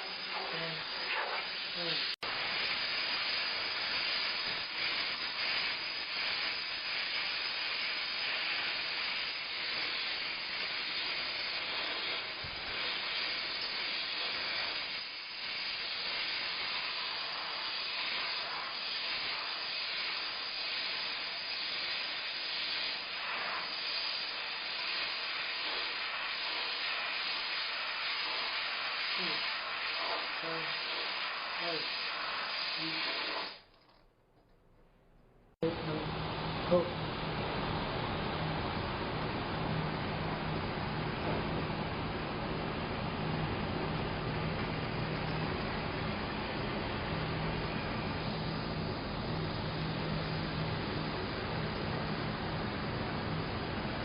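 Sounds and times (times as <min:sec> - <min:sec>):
steam mop hissing: 0:00.0 - 0:33.8.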